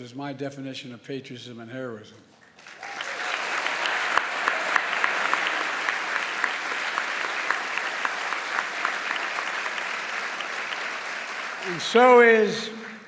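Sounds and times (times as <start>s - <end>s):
individual loud claps: 2.6s - 13.0s
large audience applauding: 2.6s - 13.0s.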